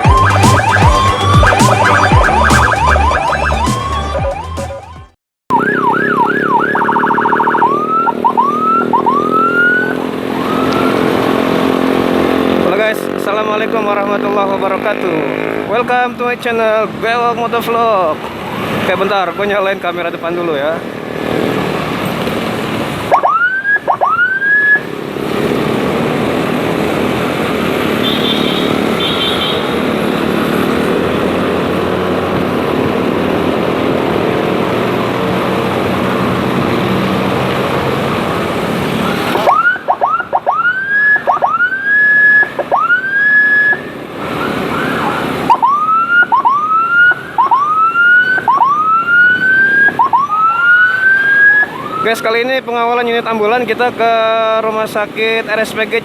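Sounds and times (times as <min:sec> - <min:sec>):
electronic siren whoops: 0:00.0 - 0:11.1, 0:23.1 - 0:24.9, 0:39.0 - 0:52.4.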